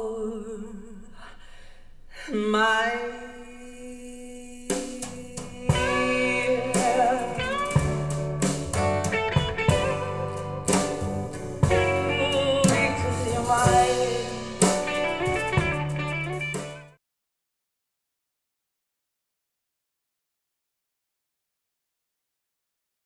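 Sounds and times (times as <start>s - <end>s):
blues music over loudspeakers: 5.0s - 17.0s.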